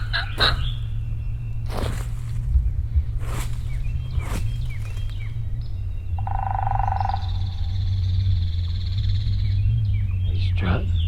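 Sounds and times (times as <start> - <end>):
turkey gobbling: 0.0 - 0.9, 6.2 - 7.7
small birds chirping: 0.0 - 11.0.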